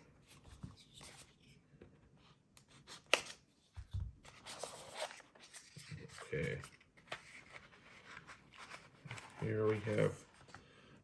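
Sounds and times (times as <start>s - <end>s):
packaging rustling and scraping: 4.3s - 10.6s.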